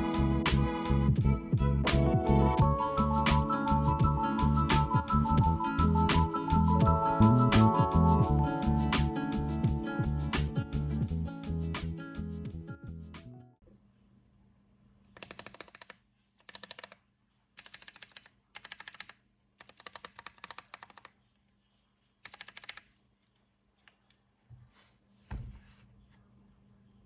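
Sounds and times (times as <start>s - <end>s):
mechanical keyboard key clacks: 15.2s - 17.0s, 17.6s - 21.1s, 22.2s - 22.8s.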